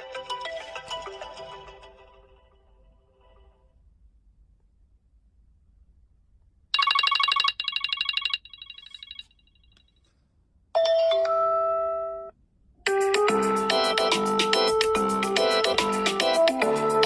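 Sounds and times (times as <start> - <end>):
phone ringtone trill: 6.8 - 9.3
chime ringtone: 6.8 - 9.4, 10.8 - 12.3.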